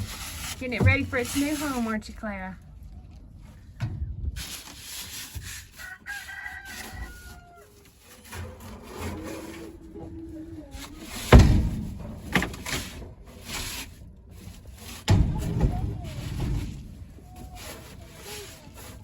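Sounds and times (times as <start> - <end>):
rooster crowing: 5.8 - 7.8
loud thump: 15.1 - 17.0.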